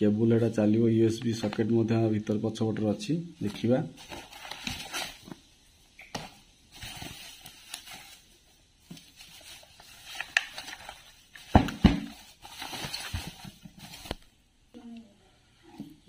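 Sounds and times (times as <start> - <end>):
packaging rustling: 3.4 - 5.5, 6.2 - 14.4.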